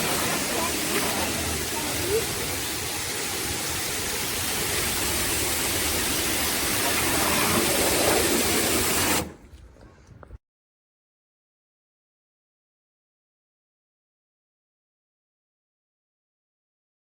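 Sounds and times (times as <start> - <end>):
pressure washer spraying water: 0.0 - 9.4.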